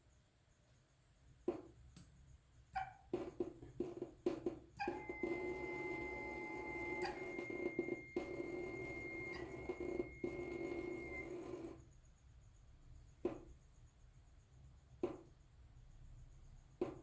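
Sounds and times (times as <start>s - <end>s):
water tap buzzing hum with rattle: 1.3s - 12.1s
thin steady whistle: 4.8s - 11.7s.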